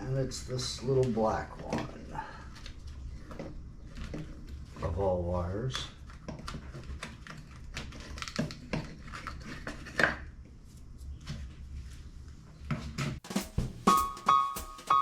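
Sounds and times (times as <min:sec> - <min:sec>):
hands clicking and rustling wiring: 0:05.9 - 0:09.8.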